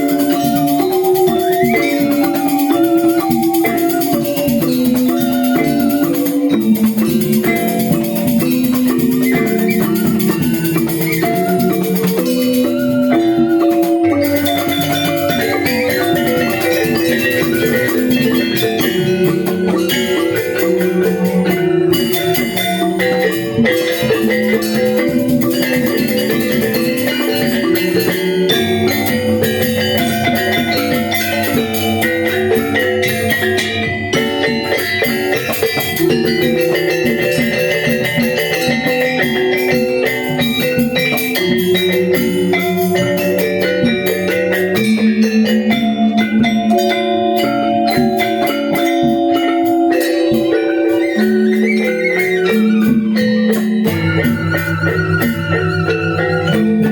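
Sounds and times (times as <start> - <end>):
gamelan metallophones ringing: 0.0 - 56.9.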